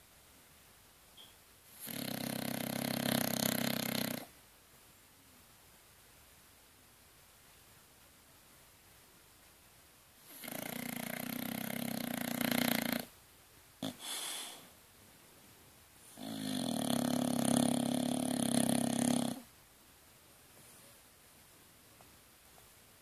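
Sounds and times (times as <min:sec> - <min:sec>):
dog snoring: 0:01.7 - 0:04.3, 0:10.2 - 0:13.1, 0:13.8 - 0:14.6, 0:16.0 - 0:19.5
soft breath: 0:14.0 - 0:14.8.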